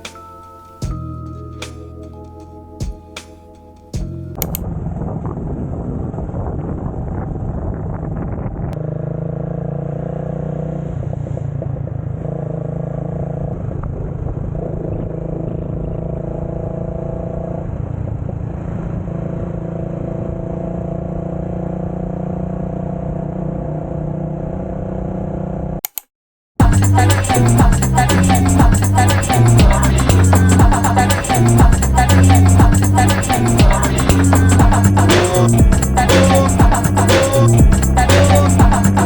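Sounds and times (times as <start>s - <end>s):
motorcycle engine running: 26.6s - 39.0s.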